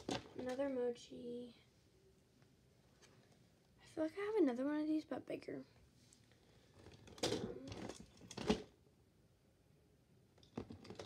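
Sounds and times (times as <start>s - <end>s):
fidget toys rustling and scraping: 6.0s - 8.7s.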